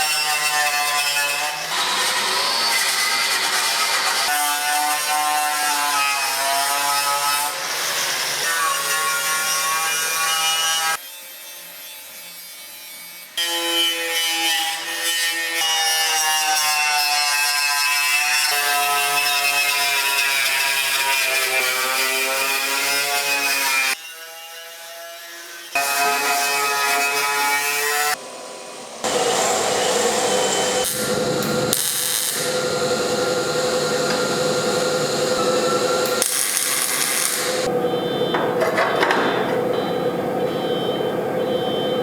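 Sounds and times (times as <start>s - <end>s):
power tool whining: 28.1s - 42.0s.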